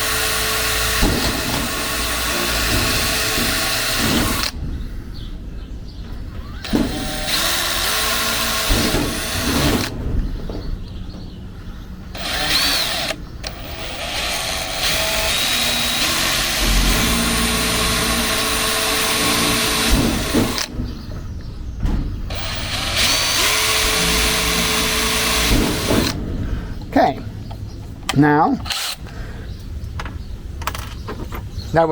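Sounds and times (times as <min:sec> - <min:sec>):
power drill drilling sheet metal: 0:00.0 - 0:04.6, 0:06.4 - 0:09.9, 0:12.2 - 0:20.7, 0:22.3 - 0:26.2.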